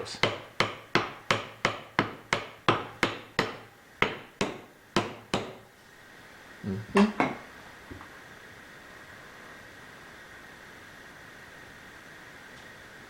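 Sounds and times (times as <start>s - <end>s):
hammer tapping: 0.0s - 5.7s.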